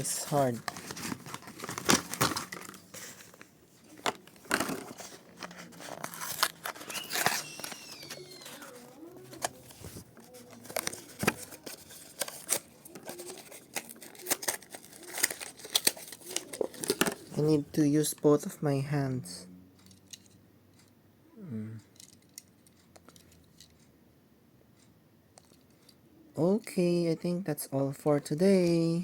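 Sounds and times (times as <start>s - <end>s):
blister packaging being forced open: 0.6s - 3.4s, 4.0s - 9.6s, 10.5s - 17.3s.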